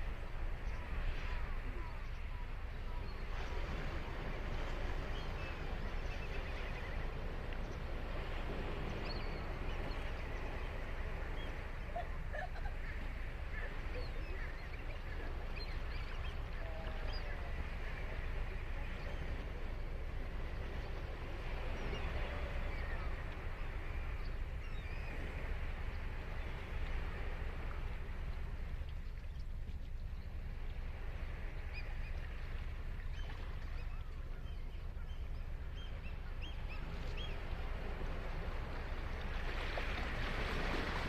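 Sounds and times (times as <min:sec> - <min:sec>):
ocean surf on sand beach: 0:00.0 - 0:41.0.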